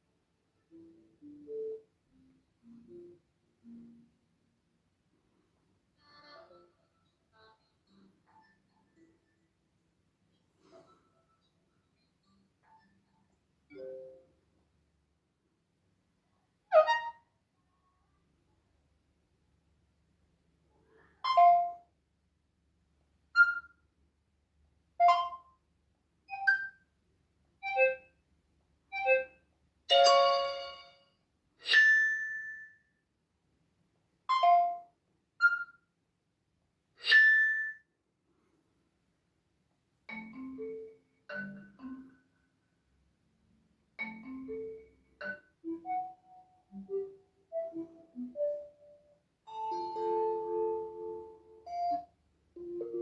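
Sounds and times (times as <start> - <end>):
phone ringtone chimes: 29.9 - 30.9, 49.5 - 52.0
soft low multi-note tones: 44.0 - 53.0.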